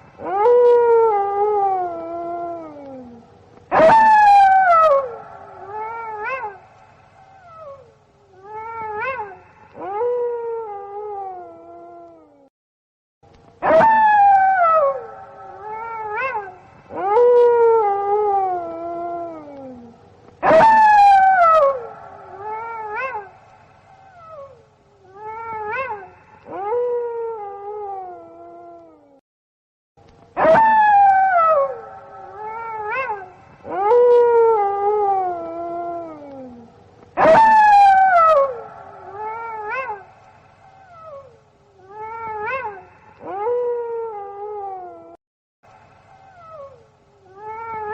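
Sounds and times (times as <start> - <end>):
wolves howling: 0.2 - 6.6, 13.6 - 23.4, 30.4 - 40.2
wolves yipping: 20.4 - 23.4, 37.2 - 41.3.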